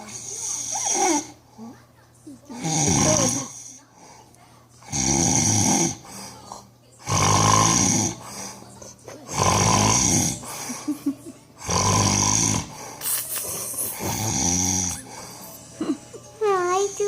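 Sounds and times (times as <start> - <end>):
man snoring loudly: 2.6 - 3.6, 4.9 - 6.0, 7.0 - 8.2, 9.3 - 10.5, 11.6 - 12.8, 14.0 - 15.1.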